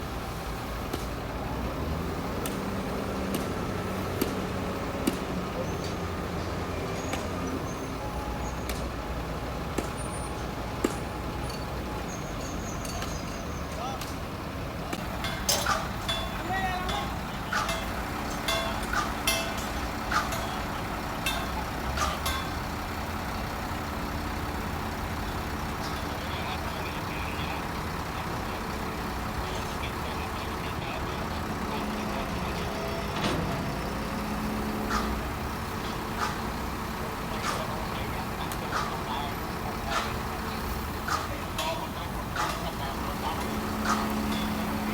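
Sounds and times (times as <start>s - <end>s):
diesel engine rumbling: 0.0s - 44.9s
sharp metallic clanks: 14.9s - 23.0s, 41.0s - 44.9s
sharp metallic knocks: 15.0s - 22.7s, 42.4s - 44.9s.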